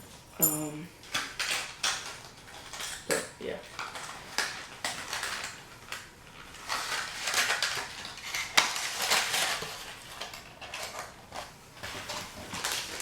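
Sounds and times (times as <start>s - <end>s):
packaging rustling: 3.7s - 13.0s.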